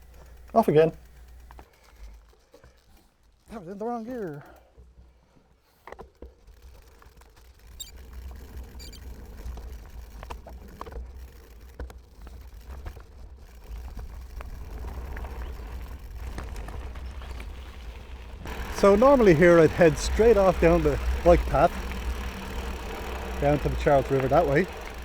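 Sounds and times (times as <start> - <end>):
bike clicks and rattles: 0.0 - 25.0
low wind and tyre rumble: 6.5 - 25.0.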